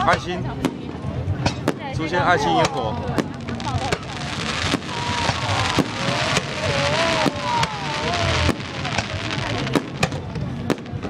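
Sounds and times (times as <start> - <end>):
crackling hiss: 3.1 - 11.0
fireworks bangs: 3.1 - 11.0.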